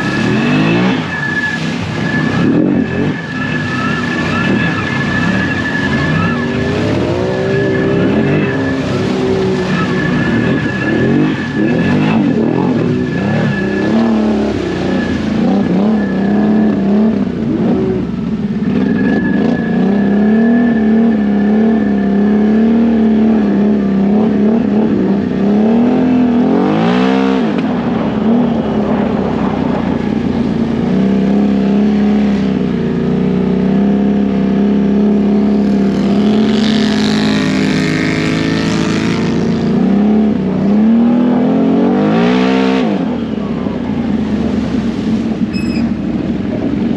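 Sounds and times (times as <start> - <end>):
atv engine running hard: 27.7 - 42.4.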